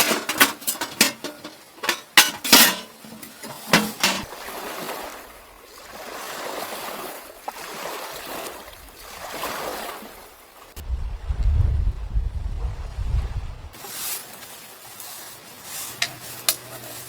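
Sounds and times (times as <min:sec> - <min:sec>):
metal cookware clinking: 0:00.0 - 0:04.3.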